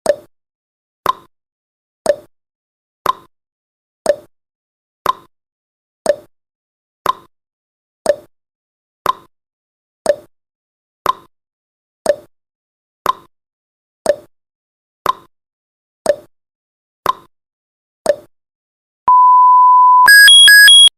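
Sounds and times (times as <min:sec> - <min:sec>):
steady high beep: 0:19.1 - 0:20.9
timer ticking: 0:20.0 - 0:20.9.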